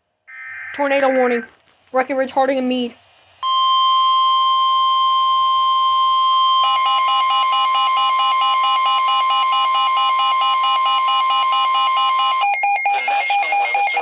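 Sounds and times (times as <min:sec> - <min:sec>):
steady alarm beep tone: 0:03.4 - 0:14.0.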